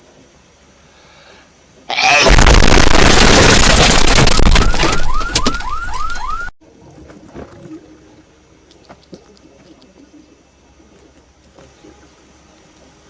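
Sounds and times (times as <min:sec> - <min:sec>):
distorted blast of noise: 0:02.0 - 0:05.5.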